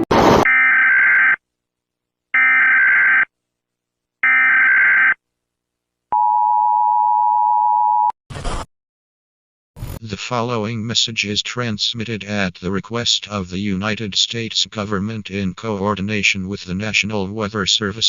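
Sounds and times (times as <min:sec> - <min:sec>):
short noise burst: 0:00.0 - 0:00.5.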